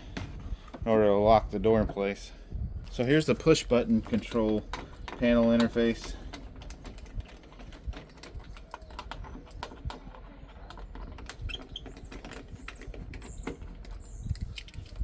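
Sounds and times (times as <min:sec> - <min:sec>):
plastic parts clicking: 0:04.0 - 0:15.0.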